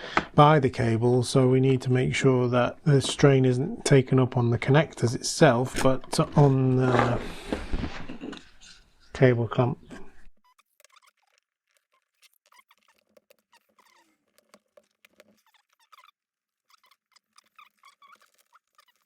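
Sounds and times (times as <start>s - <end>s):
short plastic squeaks: 10.4s - 19.0s.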